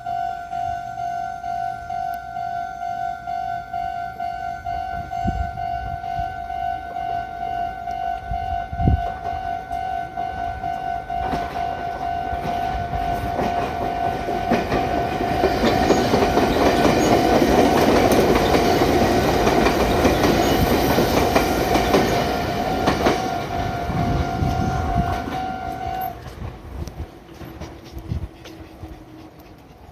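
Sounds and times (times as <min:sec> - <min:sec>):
level-crossing warning bell: 0:00.0 - 0:26.3
electric train passing: 0:00.0 - 0:29.9
wheels clacking over rail joints: 0:10.8 - 0:23.8.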